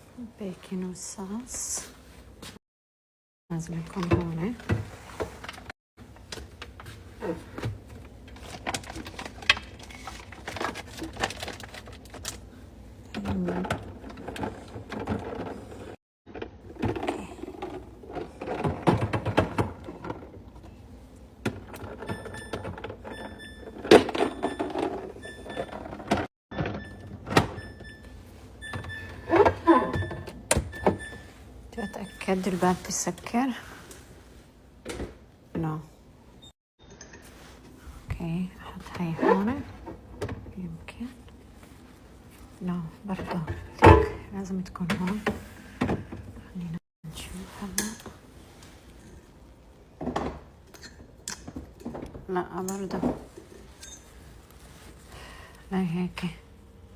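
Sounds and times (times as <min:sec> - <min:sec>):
refrigerator door alarm beeps: 0:22.0 - 0:32.6.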